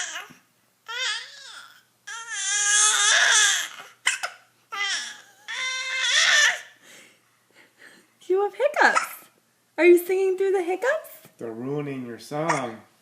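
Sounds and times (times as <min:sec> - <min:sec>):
baby hiccup: 0:02.7 - 0:05.6, 0:08.9 - 0:09.3, 0:12.5 - 0:12.8.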